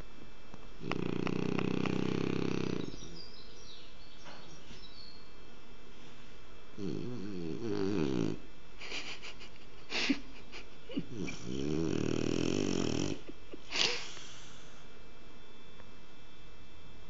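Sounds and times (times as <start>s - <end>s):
dog snoring: 0.8s - 3.2s, 6.8s - 8.5s, 11.0s - 13.3s.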